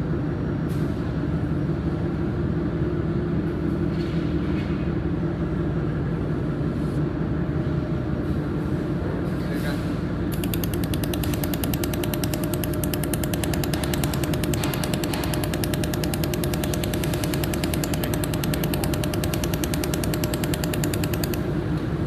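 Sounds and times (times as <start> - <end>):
machine hum: 10.2 - 22.0
laser welder clicks: 10.3 - 21.9.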